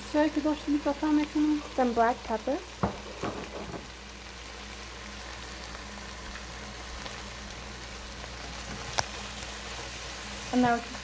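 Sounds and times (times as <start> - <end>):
vegetables sizzling in a frying pan: 0.0 - 11.0.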